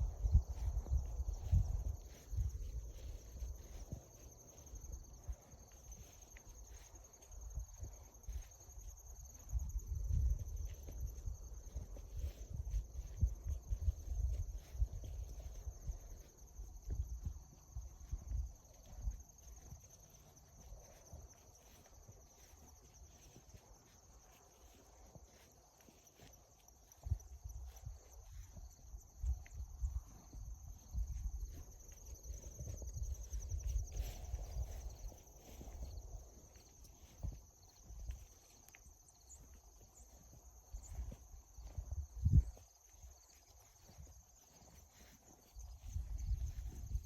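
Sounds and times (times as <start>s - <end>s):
insects chirring: 0.0s - 47.0s
soft low thumps: 9.2s - 20.5s.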